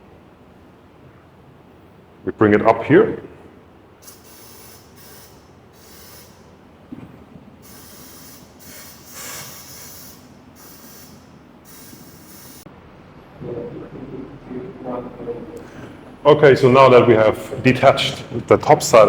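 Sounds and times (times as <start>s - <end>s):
compressed air hissing: 4.0s - 6.6s, 7.6s - 12.7s.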